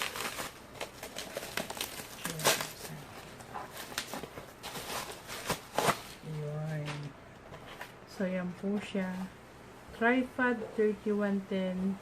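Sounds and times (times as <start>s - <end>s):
packaging rustling and crinkling: 0.0s - 8.0s.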